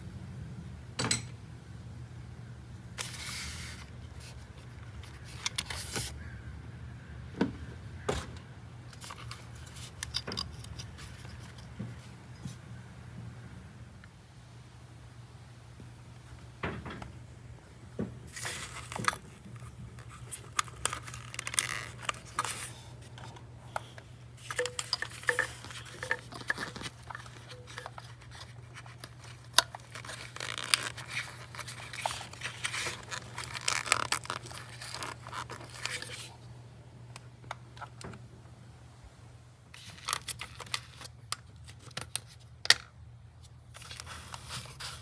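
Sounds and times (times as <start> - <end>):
steady low hum: 0.0 - 45.0
clicks scrapes and crinkling: 3.0 - 6.2, 8.9 - 12.6, 18.3 - 36.4, 39.7 - 45.0.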